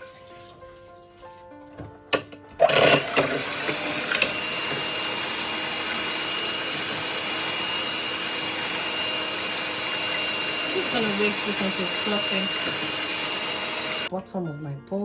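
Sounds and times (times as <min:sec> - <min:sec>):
electric hand mixer running: 0:02.6 - 0:14.1.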